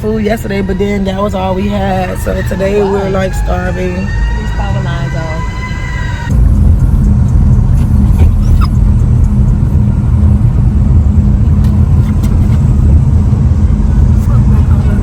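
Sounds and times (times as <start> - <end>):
car driving rumble: 0.0 - 15.0.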